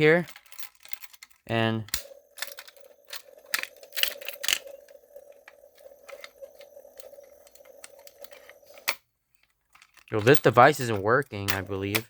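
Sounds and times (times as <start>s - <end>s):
steady hum: 1.7s - 9.0s.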